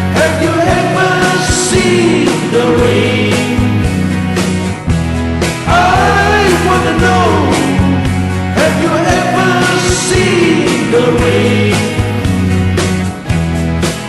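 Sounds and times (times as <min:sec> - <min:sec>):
rock band music: 0:00.0 - 0:14.0.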